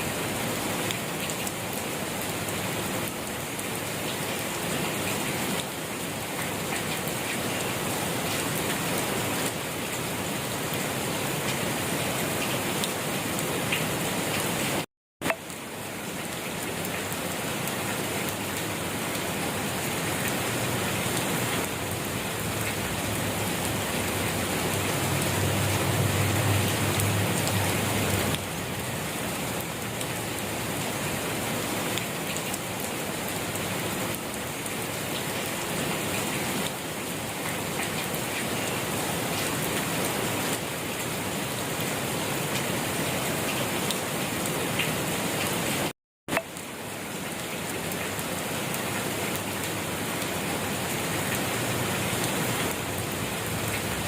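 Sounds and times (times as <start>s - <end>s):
rain falling: 0.0s - 54.0s.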